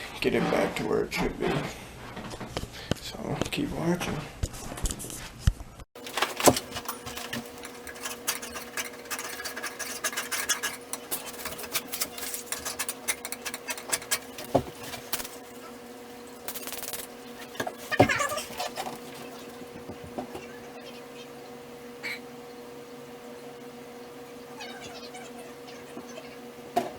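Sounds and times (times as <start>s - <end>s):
mechanical hum: 0.0s - 26.9s
clicking and rattling: 6.0s - 15.8s.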